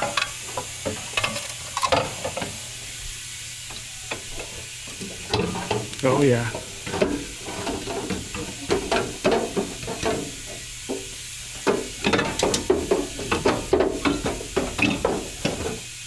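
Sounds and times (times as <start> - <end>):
metal exhaust parts knocking: 3.6 - 16.0.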